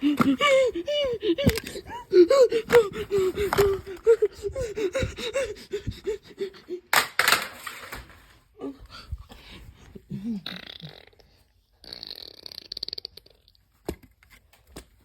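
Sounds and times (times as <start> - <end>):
person making pitched vocal sounds: 0.0 - 6.9.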